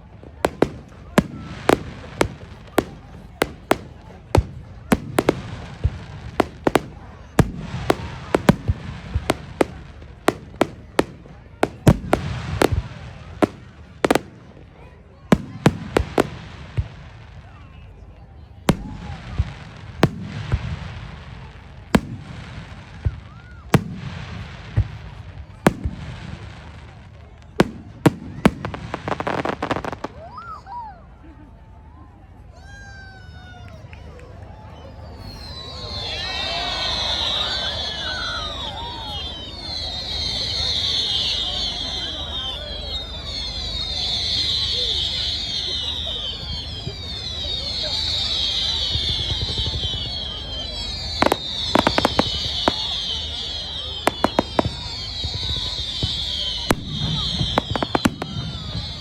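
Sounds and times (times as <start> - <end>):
fireworks bangs: 0.0 - 17.8, 18.4 - 30.5, 35.2 - 59.0
fireworks crackle hiss: 0.3 - 17.6, 18.7 - 30.4, 35.2 - 59.0
crackle of small pops: 51.2 - 53.1, 54.0 - 58.4.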